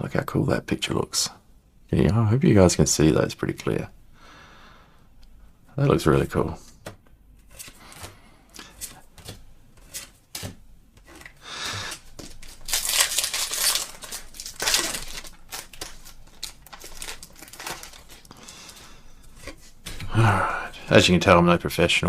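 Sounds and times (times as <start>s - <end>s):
foil wrapper crinkling and tearing: 11.1s - 19.6s.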